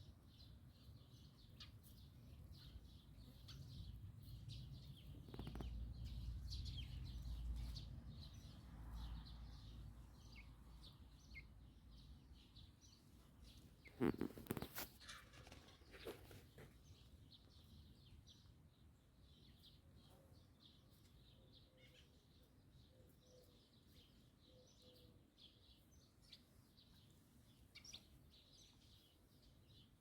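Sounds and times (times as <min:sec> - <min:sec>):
faint bird chirping: 0:00.0 - 0:30.0.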